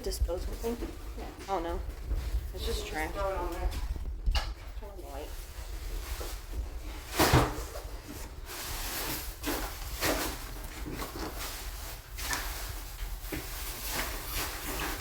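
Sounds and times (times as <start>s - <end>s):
low steady hum: 0.0s - 14.9s
garbage bags thrown: 5.2s - 15.0s.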